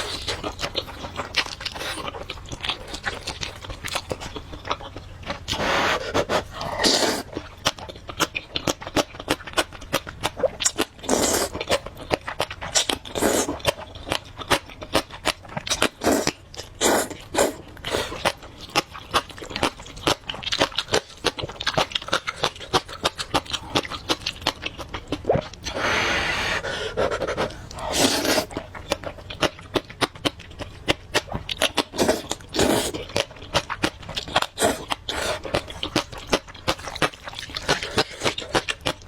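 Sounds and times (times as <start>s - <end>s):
wet chewing and smacking: 0.0s - 25.8s, 27.1s - 39.0s
slurping noodles: 5.5s - 7.3s, 13.1s - 13.6s, 16.0s - 18.3s, 25.6s - 28.5s, 31.9s - 33.0s, 34.5s - 35.6s.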